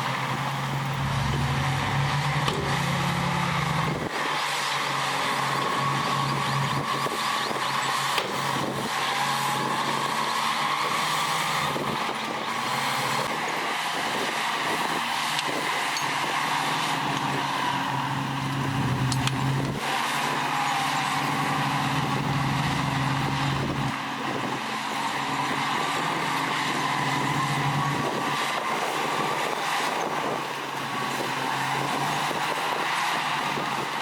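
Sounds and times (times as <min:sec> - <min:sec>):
diesel machinery engine drone: 0:00.0 - 0:34.0
wavering high whine: 0:00.3 - 0:07.9.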